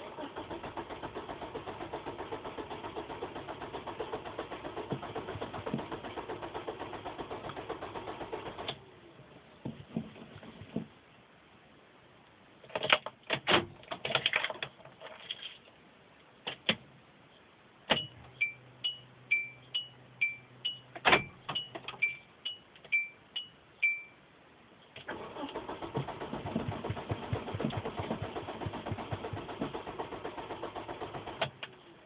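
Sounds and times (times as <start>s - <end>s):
car engine cranking and starting: 0.0s - 8.9s, 25.0s - 31.8s
car warning chime: 17.9s - 24.3s.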